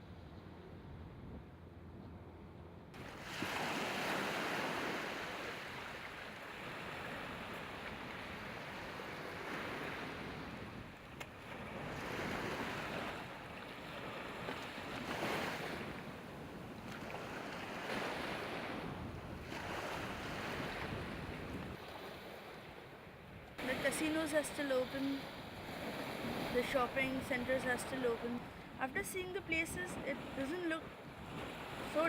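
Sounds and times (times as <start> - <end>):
wind: 0.0 - 32.0
ocean surf breaking: 3.0 - 16.2, 23.6 - 32.0.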